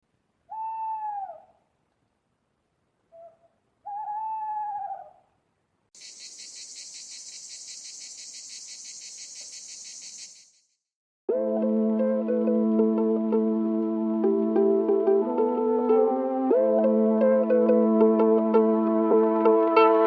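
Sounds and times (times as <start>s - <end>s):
owl hooting: 0.5s - 1.6s, 3.1s - 5.2s
pulsing insect trill: 6.0s - 10.7s.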